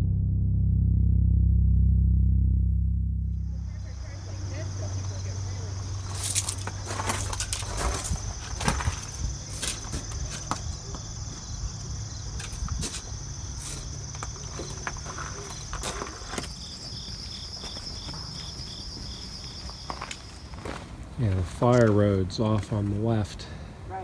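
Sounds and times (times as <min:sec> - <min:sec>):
high-pitched insect drone: 0:03.4 - 0:20.7
insect chirping: 0:03.4 - 0:24.0
footsteps on woodland trail: 0:03.5 - 0:24.0.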